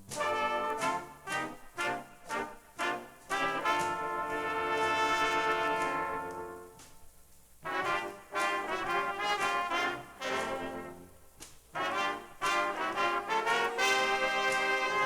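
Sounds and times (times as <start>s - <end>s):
brass section playing held chords: 0.0s - 6.8s, 7.6s - 15.0s.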